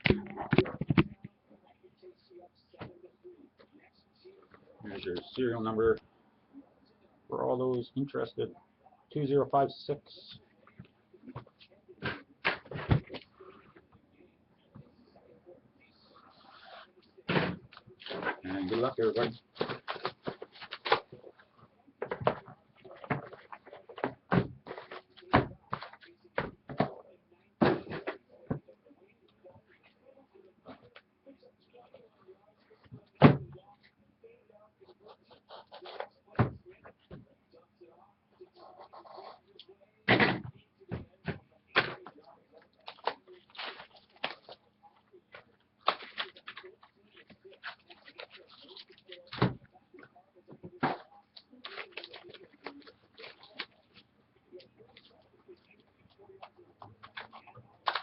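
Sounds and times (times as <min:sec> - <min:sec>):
card wrappers crinkling: 0:42.7 - 0:44.6, 0:45.3 - 0:49.4, 0:51.3 - 0:58.0.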